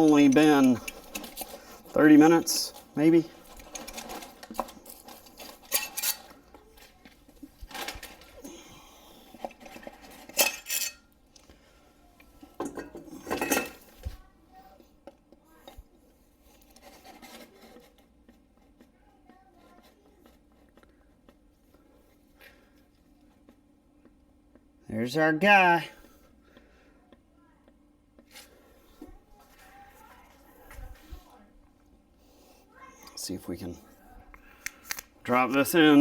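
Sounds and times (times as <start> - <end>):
metal tools clinking: 3.6 - 6.3, 10.0 - 11.1, 12.6 - 13.8.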